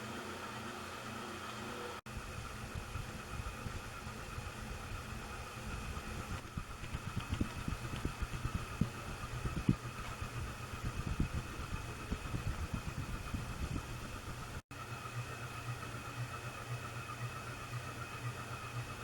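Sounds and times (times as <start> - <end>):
ceiling fan motor humming: 0.0 - 19.0.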